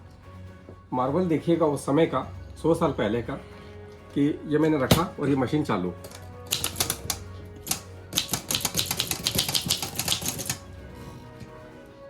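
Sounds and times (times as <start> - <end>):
typewriter keys clacking: 6.1 - 10.6.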